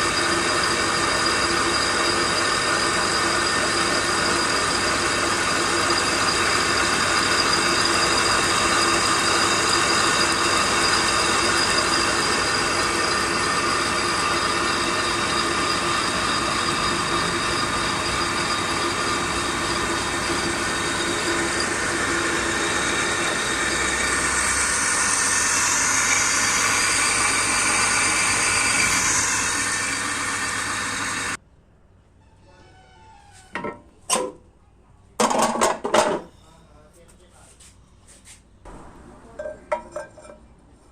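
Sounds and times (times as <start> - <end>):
metal lathe whirring: 0.0 - 31.4.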